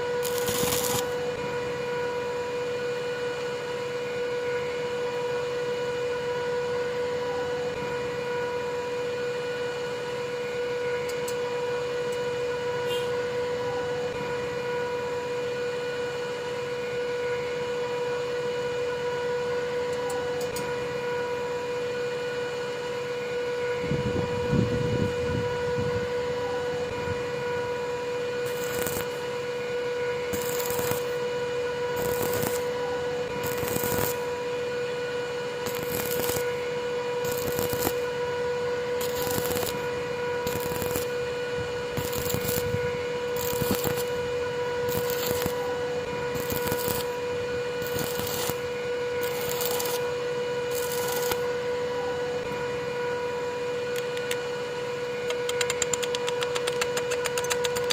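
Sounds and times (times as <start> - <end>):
electrical hum: 0.0 - 1.9, 22.8 - 57.9.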